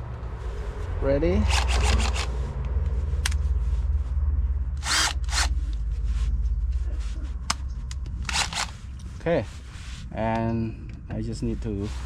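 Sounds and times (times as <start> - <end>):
power drill humming: 1.5 - 2.3, 4.8 - 5.5, 8.3 - 8.7.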